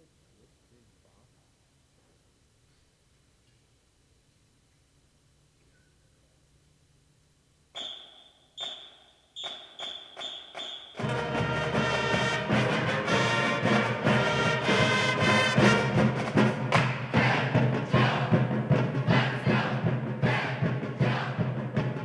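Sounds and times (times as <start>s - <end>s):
sharp ringing percussion hits: 7.8s - 12.7s
pep band with drums and brass: 7.8s - 22.0s.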